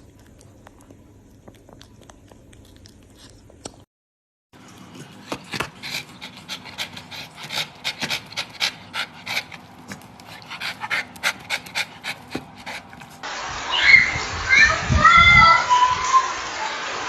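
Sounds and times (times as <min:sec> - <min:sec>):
dog panting: 0:04.6 - 0:13.2.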